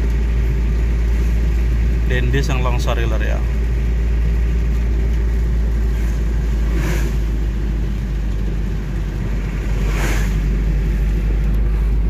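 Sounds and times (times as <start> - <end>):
vehicle rumbling along road: 0.0 - 12.0
hissing swooshes: 9.5 - 10.7.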